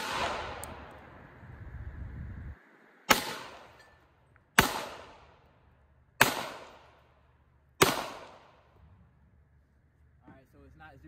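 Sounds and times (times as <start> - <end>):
gunshots with echo: 0.0 - 0.9, 3.1 - 3.7, 4.6 - 5.4, 6.2 - 7.0, 7.8 - 8.6.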